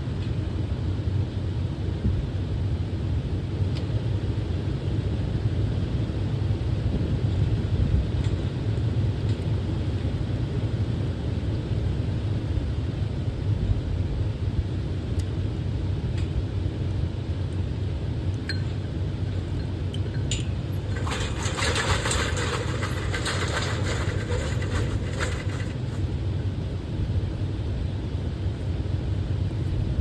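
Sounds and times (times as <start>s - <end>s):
vehicle rumbling: 16.2s - 30.0s
dense rattling and crackling: 18.6s - 26.8s.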